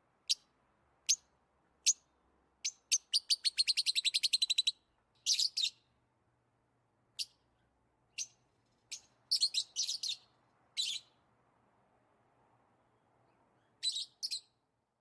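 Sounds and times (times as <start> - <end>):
lovebirds chirping: 0.2 - 5.9, 7.1 - 11.2, 13.2 - 14.6.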